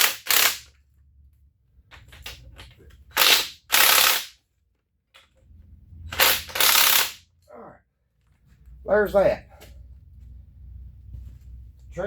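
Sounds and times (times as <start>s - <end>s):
wrench mechanical clatter: 0.0s - 0.7s, 2.0s - 4.4s, 6.1s - 7.2s.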